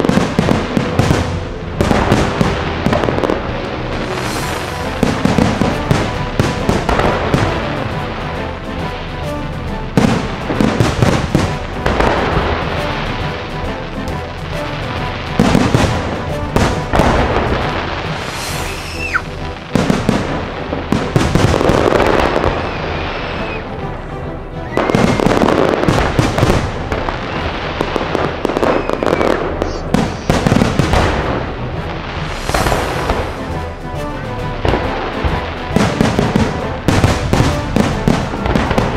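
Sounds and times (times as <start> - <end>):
fireworks crackling and bangs: 0.0 - 38.9
show music: 0.0 - 38.9
firework whistles gliding in pitch: 18.3 - 19.3, 22.6 - 23.7, 24.6 - 25.6, 28.5 - 30.4.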